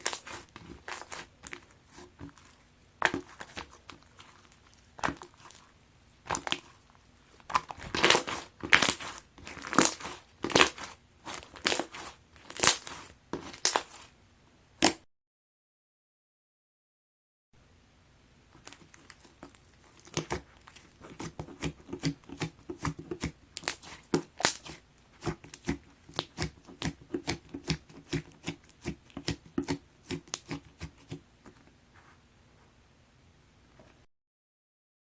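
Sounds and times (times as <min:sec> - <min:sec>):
slime squished by hand: 0:00.0 - 0:14.1, 0:18.6 - 0:31.2.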